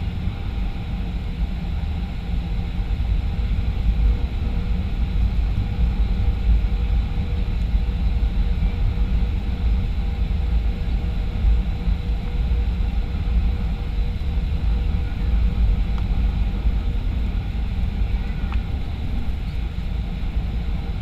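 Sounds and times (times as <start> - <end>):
faint whining tones: 0.0 - 21.0
jet engine rumble: 0.0 - 21.0.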